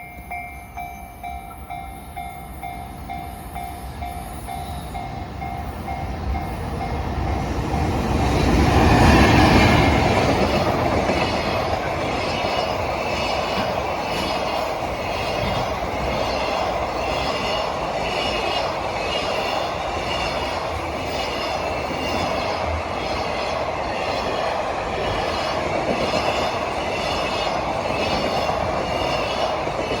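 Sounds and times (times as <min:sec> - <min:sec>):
level crossing warning bell: 0:00.0 - 0:08.4
electric locomotive passing: 0:00.0 - 0:30.0
train wheels clattering on rails: 0:00.0 - 0:30.0.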